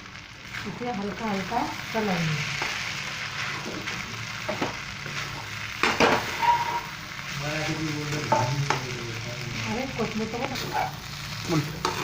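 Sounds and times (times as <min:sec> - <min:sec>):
noodles sizzling in a pan: 0:00.0 - 0:12.0
spatula knocking and scraping pan: 0:05.8 - 0:06.8.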